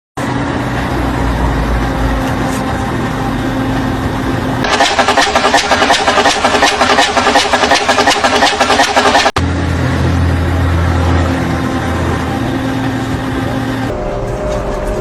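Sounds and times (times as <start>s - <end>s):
machine engine running: 0.6s - 15.0s
machine pulsing fast: 4.6s - 9.4s.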